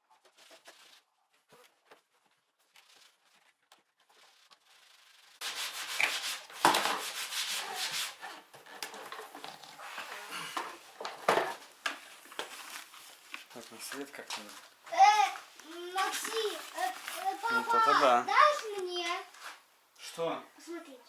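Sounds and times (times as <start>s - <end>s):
rubbing and scraping: 0.1s - 19.6s.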